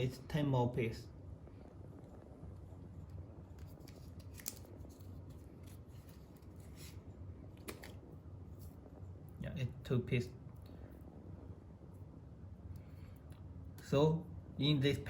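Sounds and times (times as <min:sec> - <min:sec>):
low steady hum: 0:00.0 - 0:15.0
package handling clicks and rustling: 0:03.6 - 0:06.6, 0:07.6 - 0:08.0.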